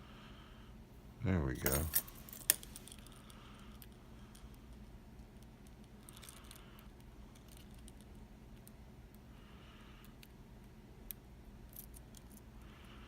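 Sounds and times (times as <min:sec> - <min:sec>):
low steady hum: 0:00.0 - 0:13.0
small metallic clicks and scraping: 0:01.6 - 0:04.6.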